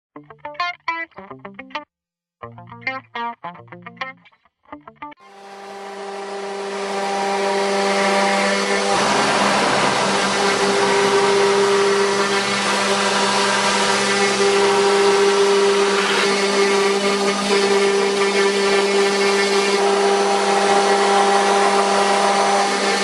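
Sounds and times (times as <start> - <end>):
router bit cutting wood: 5.2 - 23.0
router spindle whining: 5.2 - 23.0.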